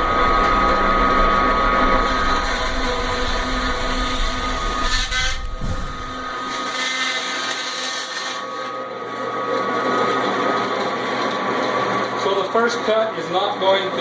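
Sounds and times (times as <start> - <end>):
deep low rumble: 0.0 - 6.5
band saw cutting frozen meat: 0.0 - 8.5.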